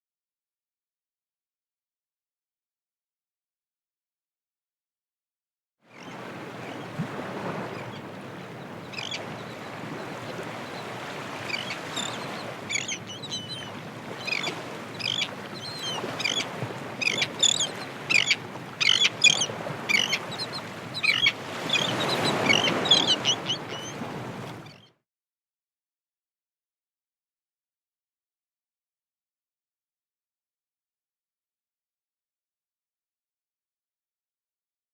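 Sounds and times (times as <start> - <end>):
ocean waves washing: 5.9 - 24.7
seagulls calling: 6.0 - 24.9.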